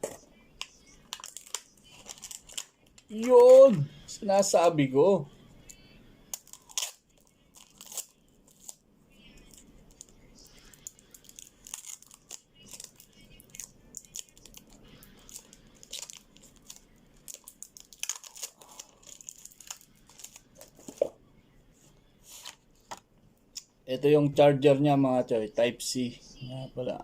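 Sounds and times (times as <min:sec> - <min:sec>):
packaging crinkling and tearing: 0:00.6 - 0:03.7, 0:06.3 - 0:08.8, 0:10.7 - 0:21.0.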